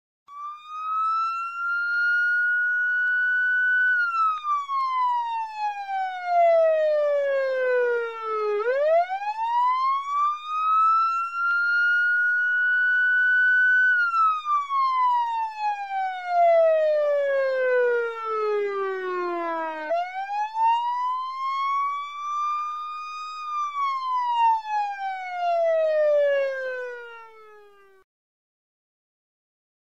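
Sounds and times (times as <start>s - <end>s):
police siren wailing: 0.3s - 28.0s.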